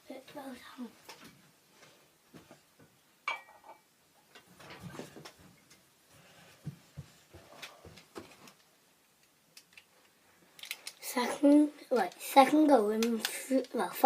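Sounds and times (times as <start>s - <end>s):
objects clicking and knocking: 10.6s - 12.2s.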